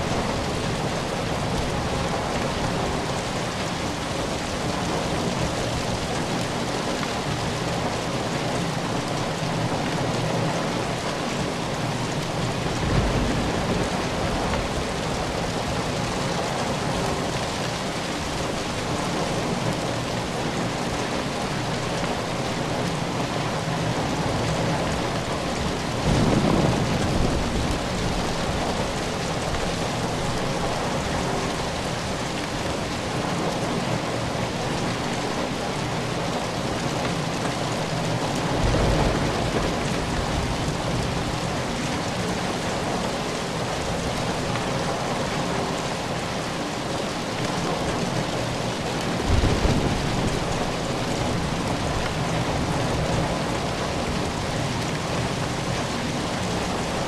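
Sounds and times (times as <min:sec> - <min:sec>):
rain falling: 0:00.0 - 0:57.0.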